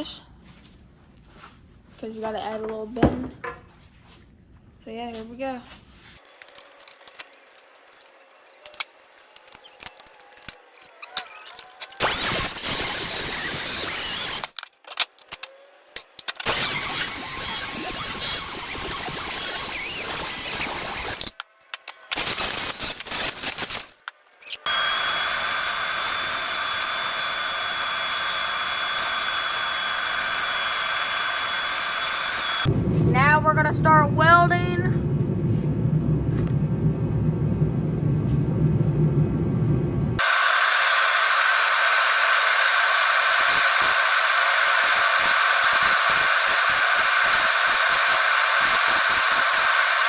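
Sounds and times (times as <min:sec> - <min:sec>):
power tool whining on steel: 0:15.3 - 0:21.4, 0:22.1 - 0:32.7, 0:40.2 - 0:50.0.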